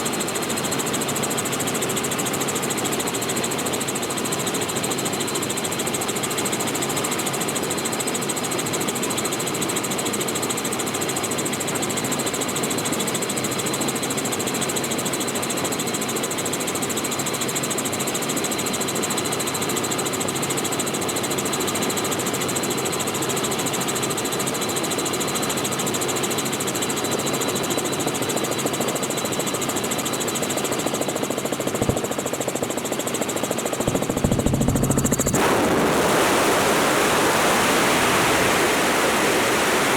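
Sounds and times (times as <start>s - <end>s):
helicopter engine and rotor drone: 0.0s - 39.9s
thin whine: 33.8s - 38.2s.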